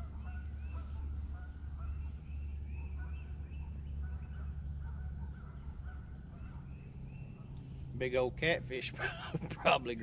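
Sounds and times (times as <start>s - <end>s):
geese honking: 0.0s - 7.8s
steady low rumble: 0.0s - 10.0s.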